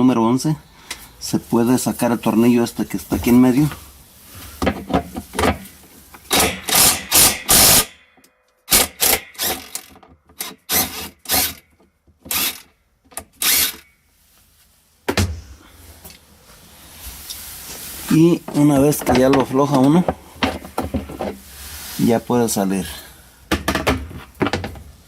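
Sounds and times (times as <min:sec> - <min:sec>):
socket tool loosening bolt: 0:06.3 - 0:07.9.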